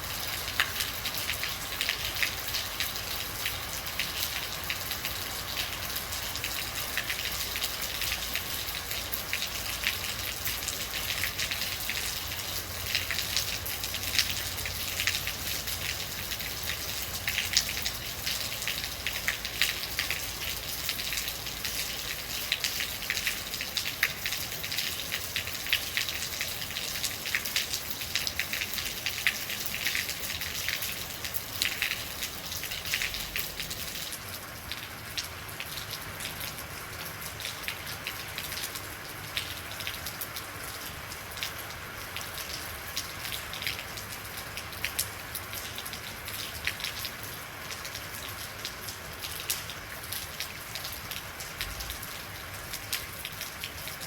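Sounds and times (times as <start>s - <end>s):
rain falling: 0.0s - 54.0s
raindrops striking a surface: 0.0s - 54.0s.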